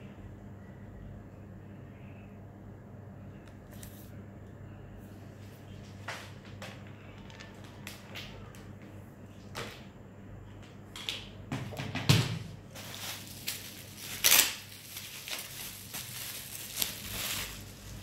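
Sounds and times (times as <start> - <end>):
packaging rustle: 12.7 - 18.0.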